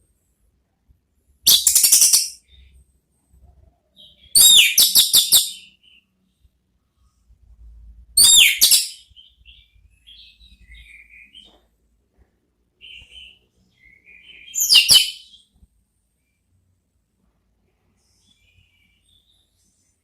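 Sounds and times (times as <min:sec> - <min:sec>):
bird singing sharp phrases: 0:01.5 - 0:02.8, 0:03.8 - 0:06.5, 0:08.2 - 0:11.6, 0:12.8 - 0:15.6, 0:18.0 - 0:19.9
soft bird twittering: 0:01.5 - 0:02.8, 0:08.2 - 0:11.6, 0:12.8 - 0:15.6.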